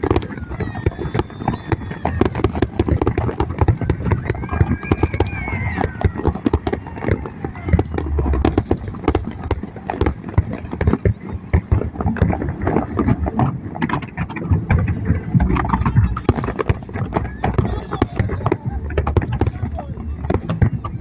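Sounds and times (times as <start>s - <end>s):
fireworks bangs and crackles: 0.0s - 21.0s.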